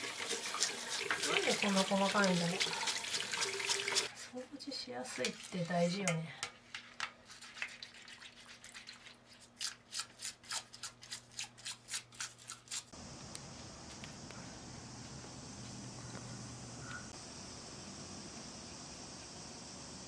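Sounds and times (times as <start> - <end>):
brush scrubbing strokes: 0.0 - 5.9, 6.8 - 13.0
steady high hiss: 13.0 - 20.0.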